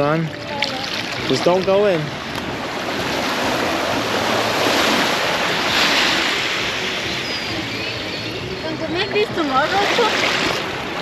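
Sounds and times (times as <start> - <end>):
small waves washing ashore: 0.0 - 11.0.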